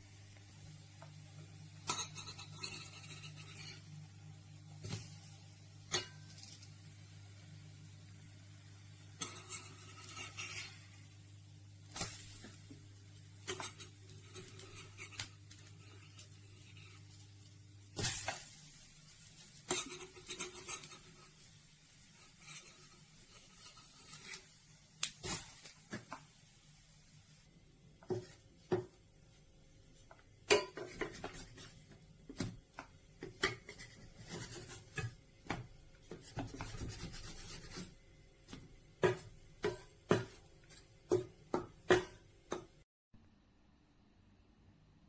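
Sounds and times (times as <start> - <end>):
rubbing and scraping: 36.1 - 38.0.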